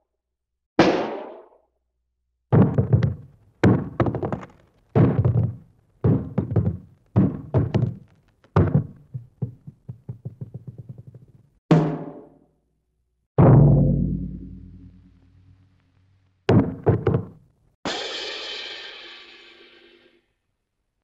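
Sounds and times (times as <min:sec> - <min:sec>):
heavy hollow cartoon thunks: 0:02.5 - 0:08.0, 0:08.6 - 0:11.1, 0:16.5 - 0:17.4.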